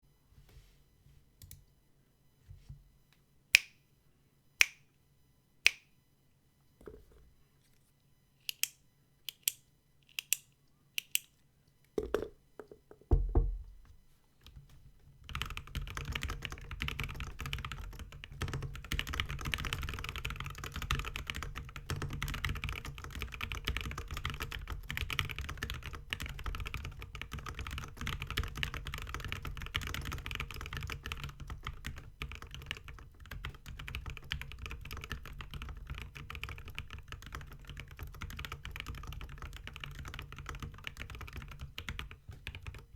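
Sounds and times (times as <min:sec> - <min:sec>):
typing on mechanical keyboard: 0:15.2 - 0:42.9.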